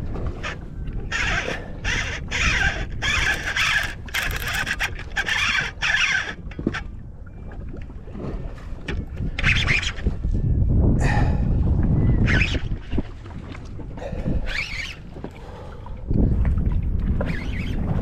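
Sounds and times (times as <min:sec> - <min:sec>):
wind on microphone: 0:00.0 - 0:18.0
fishing reel buzzing: 0:01.2 - 0:06.8.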